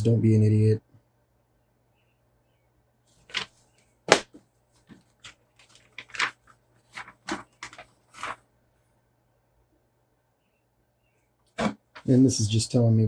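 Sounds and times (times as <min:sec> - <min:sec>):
paper crinkling and rustling: 0:03.2 - 0:08.4.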